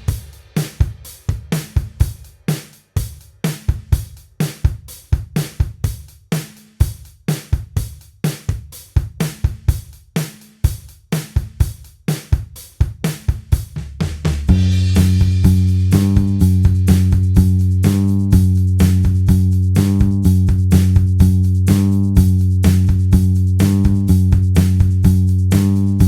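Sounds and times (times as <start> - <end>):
drum kit groove: 0.0 - 26.0
short low notes: 14.5 - 26.0
sustained bass line and chord: 14.5 - 26.0.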